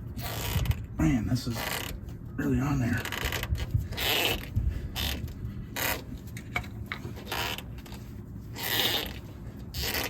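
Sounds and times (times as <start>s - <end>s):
hand tools scraping and creaking: 2.9s - 10.0s.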